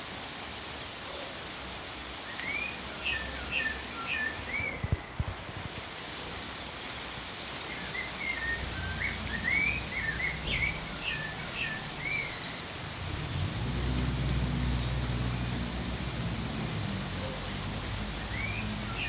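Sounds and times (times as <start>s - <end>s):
rain hissing: 0.0s - 19.0s
small birds chirping: 7.6s - 16.6s, 17.2s - 19.0s.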